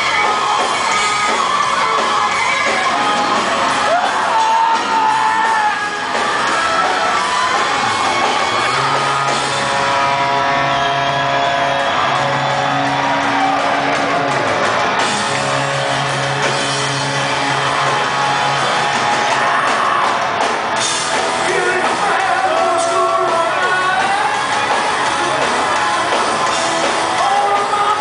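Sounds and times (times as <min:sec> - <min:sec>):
rock band playing live: 0:00.0 - 0:28.0
shouts: 0:00.0 - 0:28.0
person singing: 0:21.4 - 0:28.0.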